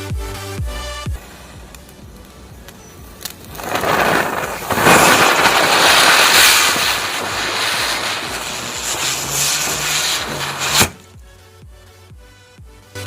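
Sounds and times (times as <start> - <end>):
firecracker rushing hiss: 1.2 - 11.1.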